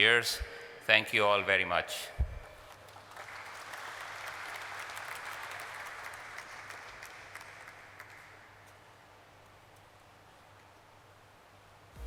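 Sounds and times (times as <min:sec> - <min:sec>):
audience applauding: 0:02.6 - 0:08.7.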